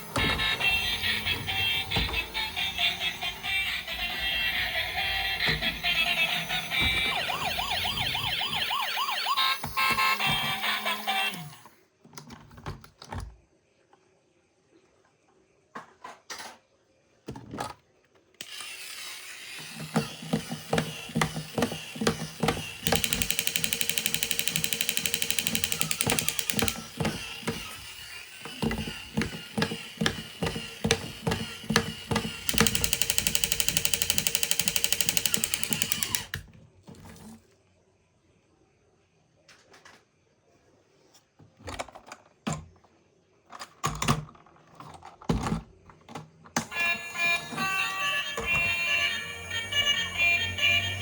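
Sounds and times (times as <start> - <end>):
toy motor with ratcheting gears: 0.0 - 7.8, 18.4 - 36.4, 46.7 - 51.0.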